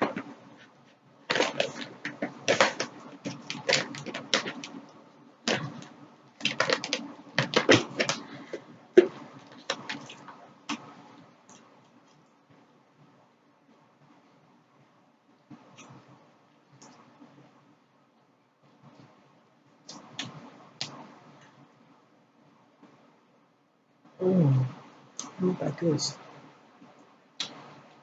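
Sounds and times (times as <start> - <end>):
crunchy chewing: 1.3 - 10.8.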